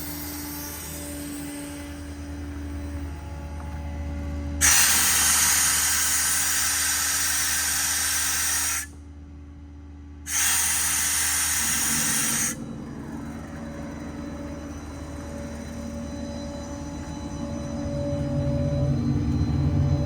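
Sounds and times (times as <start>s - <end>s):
truck and compressor humming: 0.0s - 20.0s
air hose hissing blasts: 4.6s - 8.9s, 10.3s - 12.6s.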